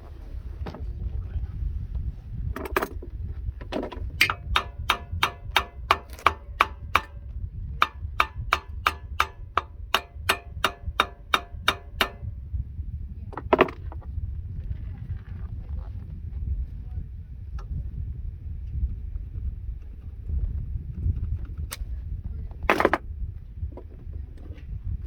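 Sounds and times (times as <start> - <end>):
steady low rumble: 0.0 - 25.0
hammer ringing on metal: 4.2 - 12.4.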